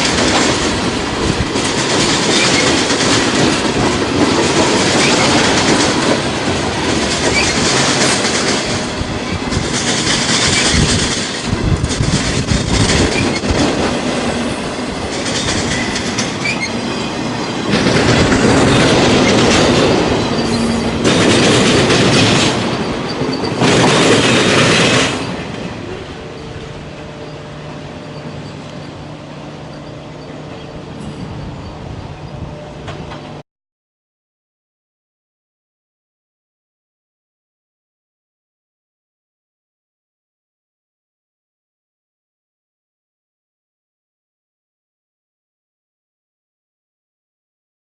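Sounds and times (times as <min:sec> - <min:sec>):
freight train wheels clacking: 0:00.0 - 0:33.4.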